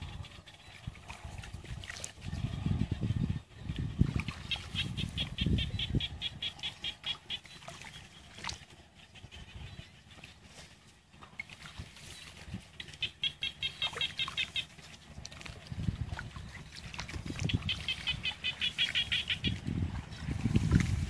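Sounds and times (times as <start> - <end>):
low rustling or splashing: 0.0 - 5.4, 10.1 - 21.0
animal calling in high chirps: 12.7 - 14.8, 17.5 - 19.6.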